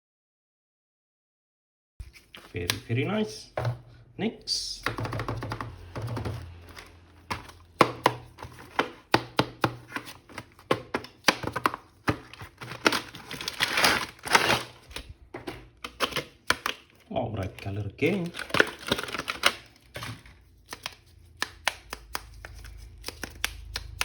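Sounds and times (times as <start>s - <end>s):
plastic parts clicking and tapping: 4.8s - 13.6s, 14.8s - 24.0s
packaging rustling: 5.0s - 9.1s, 9.8s - 24.0s.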